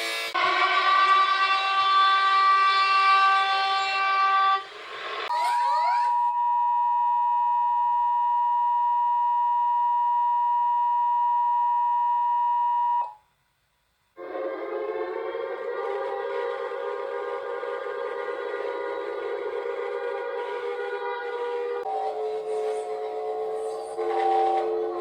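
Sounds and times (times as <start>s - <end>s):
loud buzzing alarm tone: 0.4s - 4.6s.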